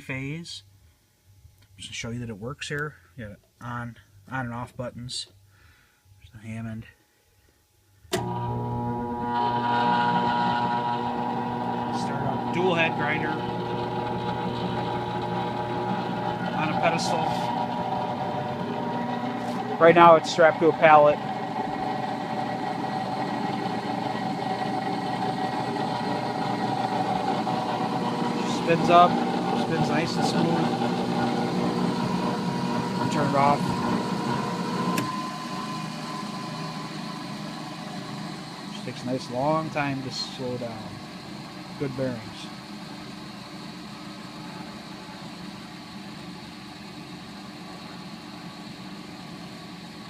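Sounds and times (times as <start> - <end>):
bench grinder running: 8.2 - 42.8.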